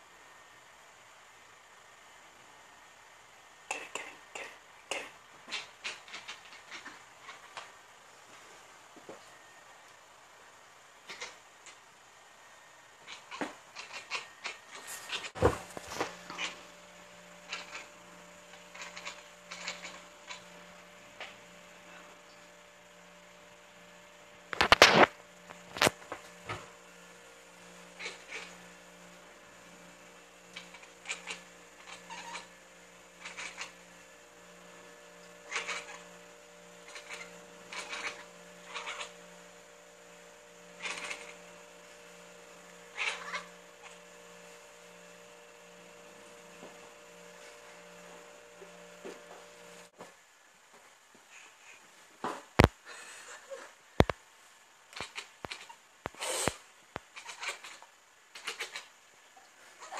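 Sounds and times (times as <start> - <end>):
steady electrical hum: 0.0 - 59.9
cat chirping: 5.5 - 7.6, 11.1 - 11.8, 13.1 - 15.4, 17.5 - 17.9, 18.7 - 20.5, 28.0 - 28.5, 30.6 - 32.5, 33.2 - 33.8, 35.5 - 36.1, 36.9 - 39.2, 40.8 - 41.4, 42.9 - 43.5, 55.0 - 55.8, 57.1 - 58.9.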